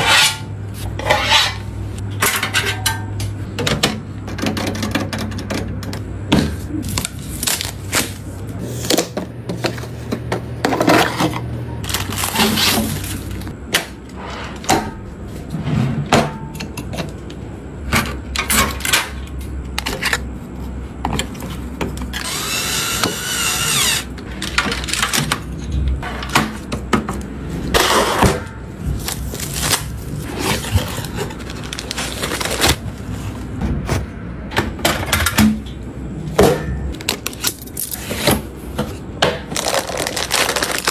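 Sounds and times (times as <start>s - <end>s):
clicks and knocks of plastic and metal: 3.6s - 6.0s.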